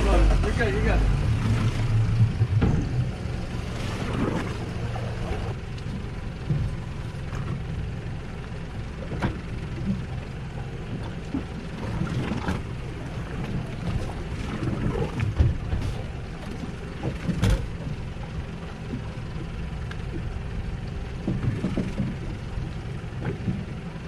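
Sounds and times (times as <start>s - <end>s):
boat engine running: 0.0s - 24.0s.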